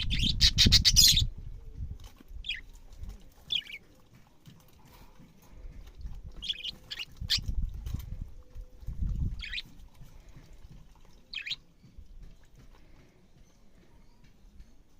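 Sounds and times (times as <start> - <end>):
budgerigar chirping: 6.4 - 7.4, 9.4 - 9.6, 11.3 - 11.6.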